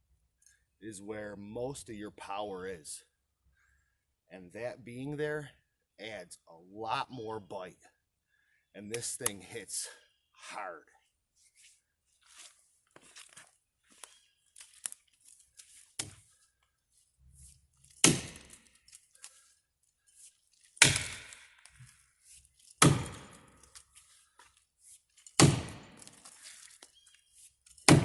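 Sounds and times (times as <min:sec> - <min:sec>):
axe chopping into tree trunk: 0:16.0 - 0:16.2, 0:17.9 - 0:18.7, 0:20.8 - 0:21.6, 0:22.8 - 0:23.6, 0:25.4 - 0:26.2.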